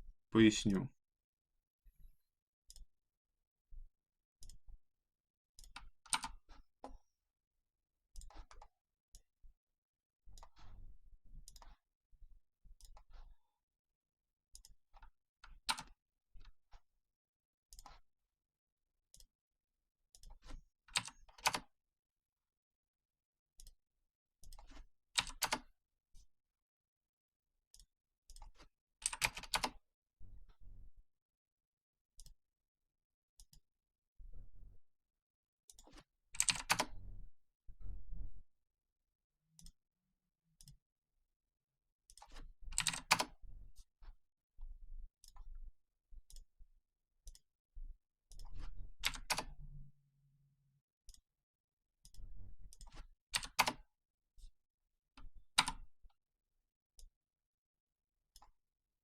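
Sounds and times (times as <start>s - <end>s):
computer mouse clicks: 2.7s - 2.9s, 5.6s - 7.0s, 8.2s - 8.7s, 11.4s - 11.8s, 14.6s - 16.5s, 24.4s - 25.7s, 27.7s - 29.8s, 35.7s - 37.0s, 42.1s - 43.4s, 48.3s - 49.8s, 52.0s - 53.8s, 55.2s - 55.9s
keyboard keystrokes: 24.7s - 25.6s, 29.0s - 29.8s, 35.8s - 36.9s, 42.2s - 43.3s, 48.3s - 49.5s, 52.8s - 53.8s.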